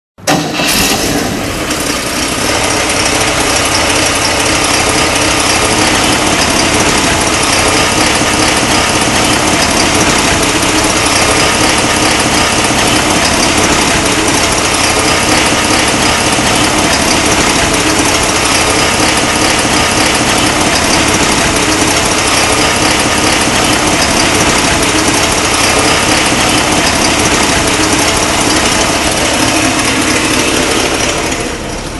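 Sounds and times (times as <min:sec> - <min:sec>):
car engine running: 0:00.3 - 0:31.9.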